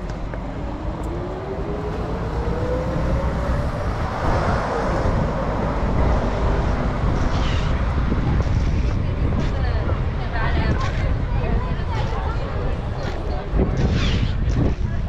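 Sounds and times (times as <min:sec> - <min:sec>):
vehicle engine passing by: 0:00.0 - 0:09.0
low rumble: 0:00.0 - 0:15.0.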